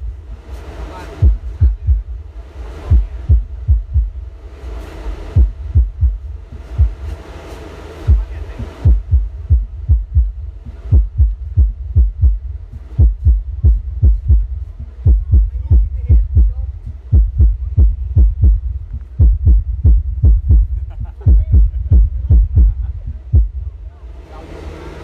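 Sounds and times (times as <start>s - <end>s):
deep bass thumps: 0.0s - 7.3s, 8.0s - 24.1s
hiss: 0.0s - 9.5s.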